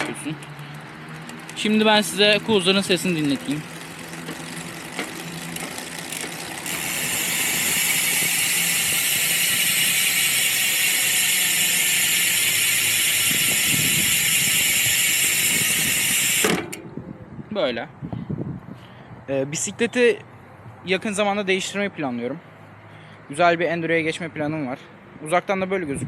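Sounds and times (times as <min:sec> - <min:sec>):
bike freehub buzzing: 0:00.0 - 0:16.8.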